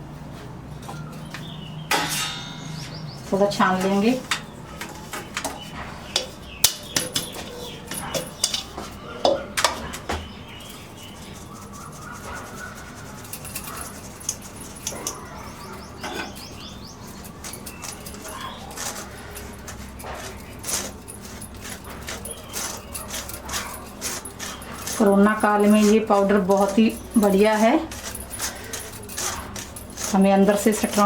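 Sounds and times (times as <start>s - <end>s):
sieve taps and clinks: 6.2s - 10.2s.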